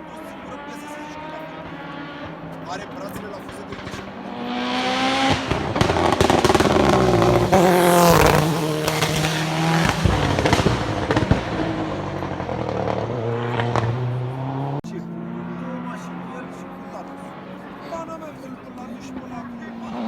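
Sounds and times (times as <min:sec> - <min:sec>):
race car accelerating past: 0:00.0 - 0:20.0
engine sharp cracks: 0:01.2 - 0:14.7.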